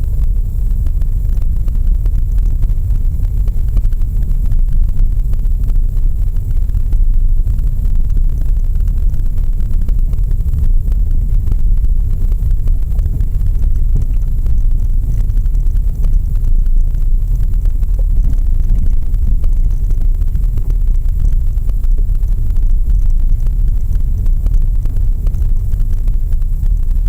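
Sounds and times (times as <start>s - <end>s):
car road rumble: 0.0s - 27.0s
wind on microphone: 0.0s - 27.0s.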